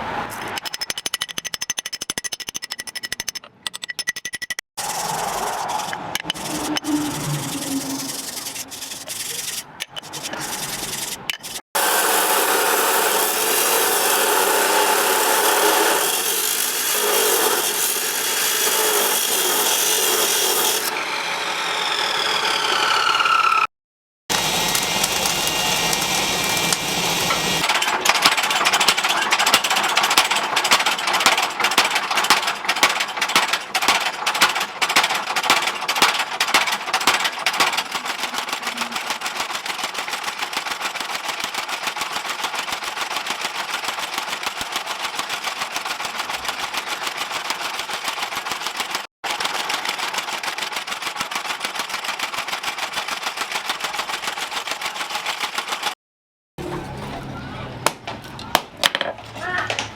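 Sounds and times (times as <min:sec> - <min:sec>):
machine-like hammering: 0:24.3 - 0:46.9.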